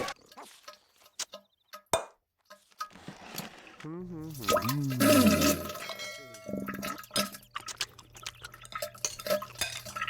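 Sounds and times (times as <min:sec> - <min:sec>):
water dripping and splattering: 0:04.2 - 0:10.0.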